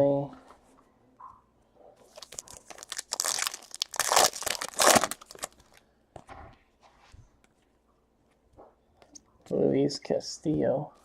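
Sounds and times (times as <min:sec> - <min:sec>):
foil wrapper crinkling: 0:02.1 - 0:05.8.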